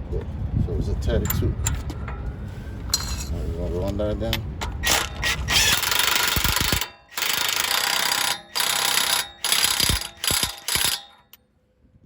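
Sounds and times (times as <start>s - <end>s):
impact wrench hammering: 4.6s - 11.4s.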